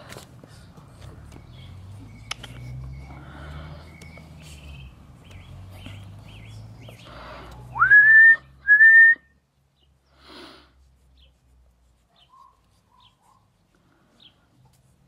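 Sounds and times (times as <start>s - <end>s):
person whistling: 7.8s - 9.3s.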